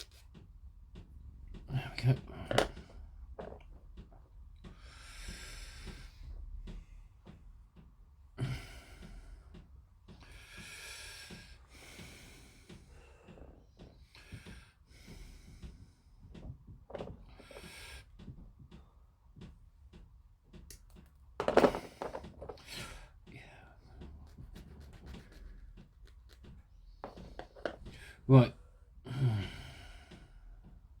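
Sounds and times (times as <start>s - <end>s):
heavy nose breathing: 4.7s - 6.8s, 8.4s - 18.4s, 21.7s - 30.8s
plastic parts clicking: 20.7s - 22.8s, 26.2s - 28.0s.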